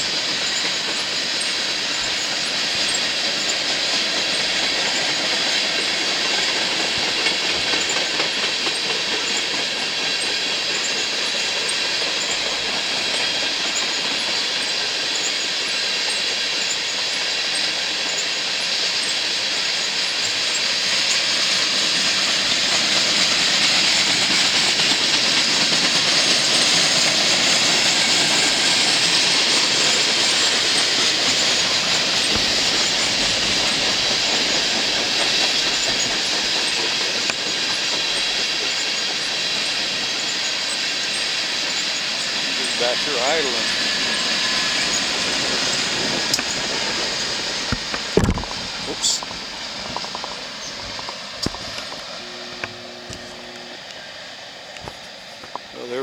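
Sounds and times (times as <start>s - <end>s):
clickety-clack at rail joints: 0.0s - 56.0s
train wheels rumbling on rail: 0.0s - 56.0s.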